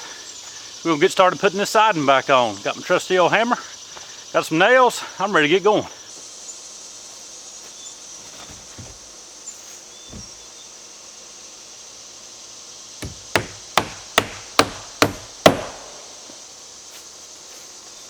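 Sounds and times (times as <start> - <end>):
hammer driving nail into wood: 10.1 - 10.4, 13.0 - 16.0.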